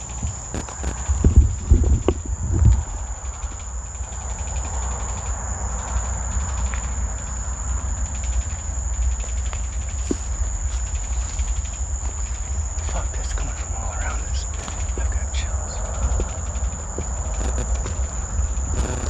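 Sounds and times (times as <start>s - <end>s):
high-pitched insect chorus: 0.0s - 19.0s
low rumble: 0.0s - 19.0s.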